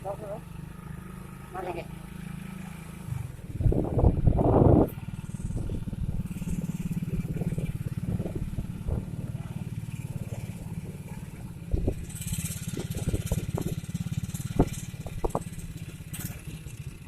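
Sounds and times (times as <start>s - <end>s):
motorcycle engine running: 0.0s - 17.0s
sharp knocks from bumps: 14.4s - 16.3s.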